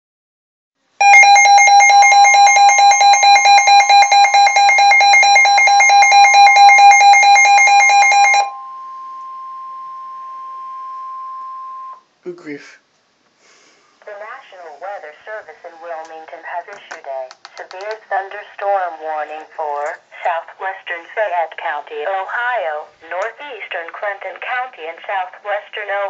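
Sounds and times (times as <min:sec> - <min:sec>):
steady warning tone: 0:01.0 - 0:12.0
warbling electronic alarm: 0:01.0 - 0:12.0.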